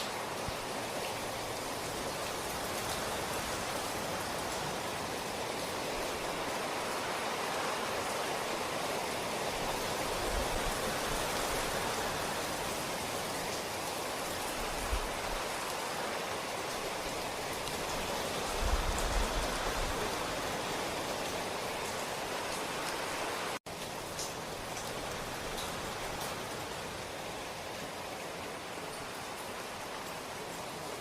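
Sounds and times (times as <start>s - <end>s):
steady rain falling: 0.0s - 31.0s.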